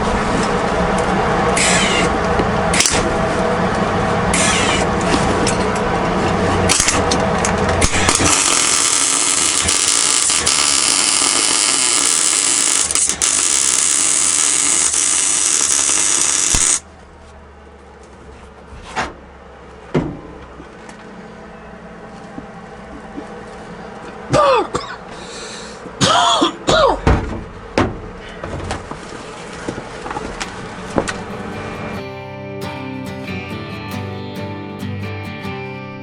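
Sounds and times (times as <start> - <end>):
power tool whirring: 7.8 - 16.8
low hum: 29.4 - 34.6.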